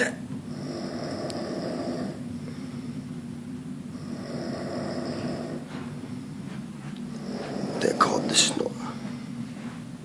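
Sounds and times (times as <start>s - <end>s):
person snoring: 0.0s - 2.8s, 3.9s - 5.7s, 7.1s - 9.0s.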